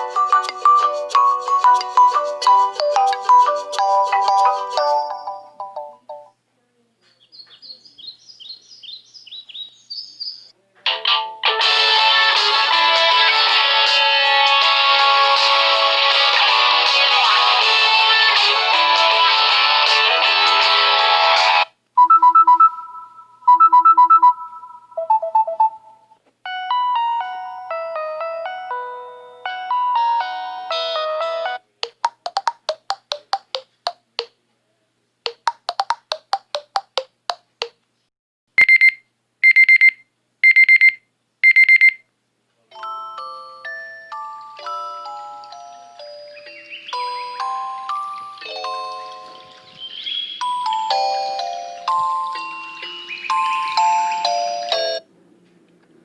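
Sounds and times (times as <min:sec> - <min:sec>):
marimba-like ringtone melody: 0:00.0 - 0:06.4, 0:22.0 - 0:33.7, 0:35.3 - 0:37.0, 0:42.8 - 0:55.0
chirping birdsong-like ringtone: 0:01.6 - 0:06.4, 0:22.1 - 0:31.0, 0:42.8 - 0:55.0
two-note electronic beeps: 0:22.0 - 0:26.2
soft low beeps: 0:22.0 - 0:26.7, 0:38.6 - 0:42.1.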